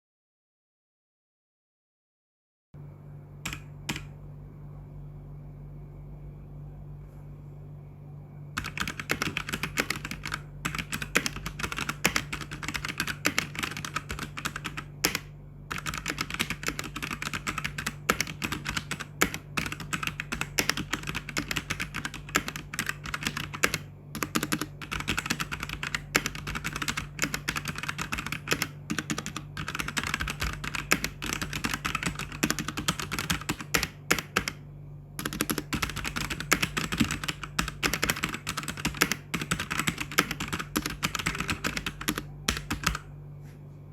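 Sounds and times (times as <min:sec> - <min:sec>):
mechanical keyboard typing: 0:03.5 - 0:04.1, 0:08.6 - 0:34.6, 0:35.2 - 0:43.1.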